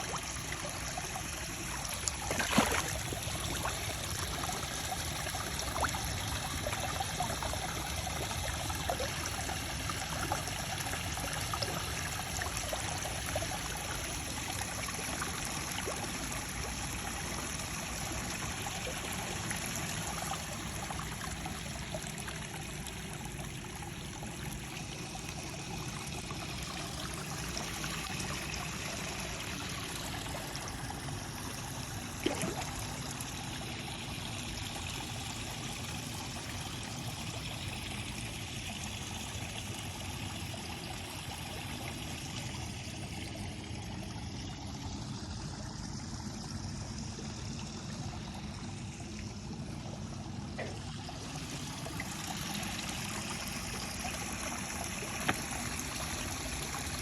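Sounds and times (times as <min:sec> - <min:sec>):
water drips: 0:00.0 - 0:09.1, 0:50.6 - 0:57.0
water trickling and splashing: 0:00.0 - 0:57.0.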